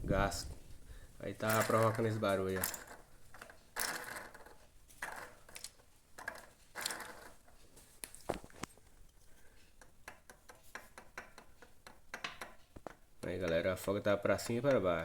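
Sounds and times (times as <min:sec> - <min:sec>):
camshaft clicking and rattling: 0:01.4 - 0:07.5.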